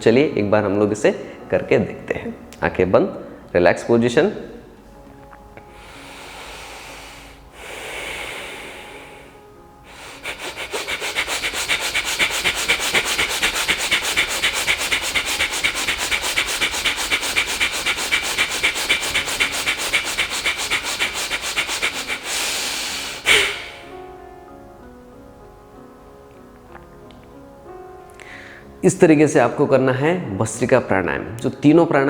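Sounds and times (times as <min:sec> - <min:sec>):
rapid forceful nose breathing: 0:05.7 - 0:24.0.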